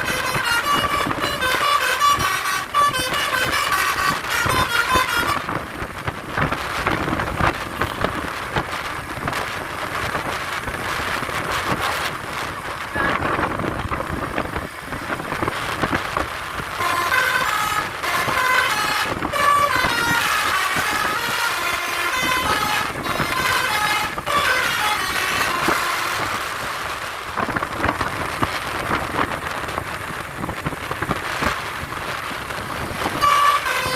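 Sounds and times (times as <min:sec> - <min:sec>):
multi-tone musical bus horn: 0:00.0 - 0:05.9, 0:16.7 - 0:26.9, 0:33.0 - 0:33.9
vehicle noise: 0:00.0 - 0:33.9.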